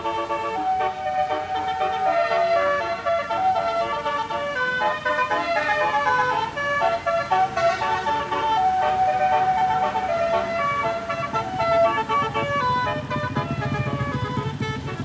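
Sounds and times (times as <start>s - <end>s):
low engine rumble: 0.0s - 15.0s
musical bus horns playing: 0.0s - 15.0s.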